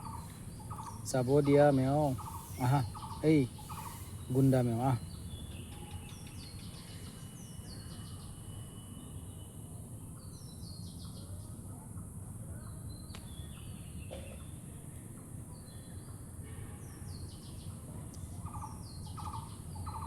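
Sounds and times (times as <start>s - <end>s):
small birds chirping: 0.0s - 8.4s, 17.0s - 20.0s.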